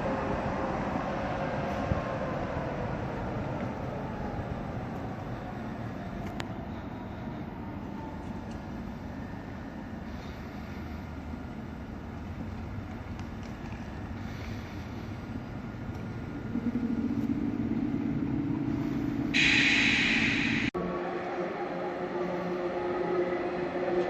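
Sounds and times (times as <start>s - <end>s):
electric train running past: 0.0s - 24.0s
sharp click: 19.4s - 20.8s.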